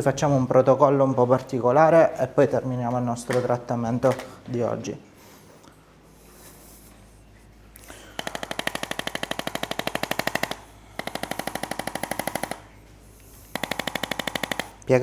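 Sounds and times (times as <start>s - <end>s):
electric percussion device tapping: 2.9s - 4.5s, 7.9s - 12.8s, 13.5s - 15.0s.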